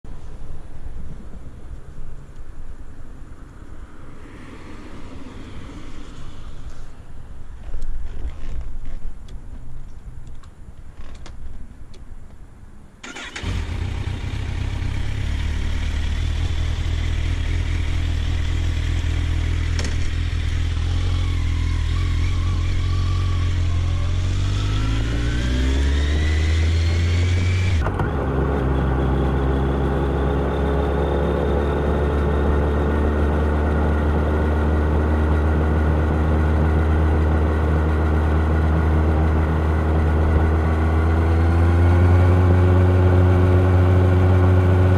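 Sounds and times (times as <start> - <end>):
motorcycle engine starting and revving: 13.0 - 44.9.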